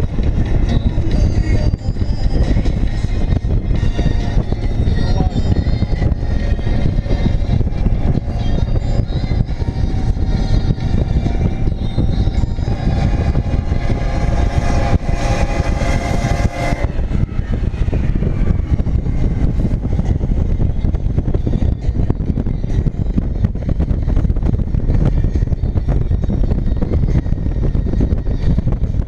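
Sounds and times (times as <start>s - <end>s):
passing train rumble: 0.0s - 29.0s
train horn chord: 12.6s - 17.3s.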